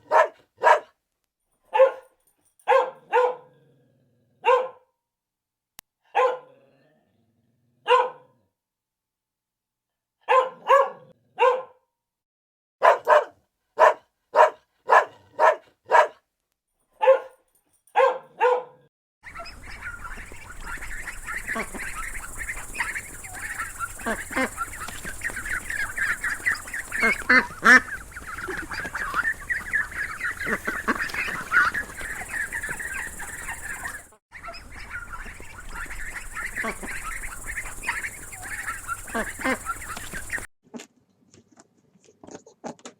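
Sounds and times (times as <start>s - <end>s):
dog barking: 0.0s - 1.0s, 1.7s - 3.6s, 4.4s - 4.9s, 6.1s - 6.6s, 7.8s - 8.4s, 10.2s - 11.8s, 12.8s - 16.2s, 17.0s - 17.4s, 18.0s - 19.5s
ducks quacking: 19.3s - 40.5s.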